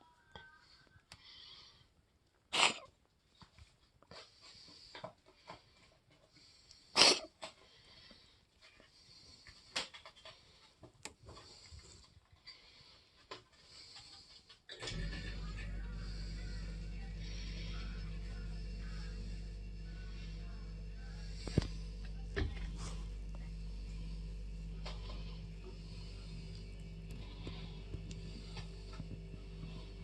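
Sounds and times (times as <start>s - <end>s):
cat coughing: 2.5s - 2.9s
hissing breaths: 4.2s - 30.0s.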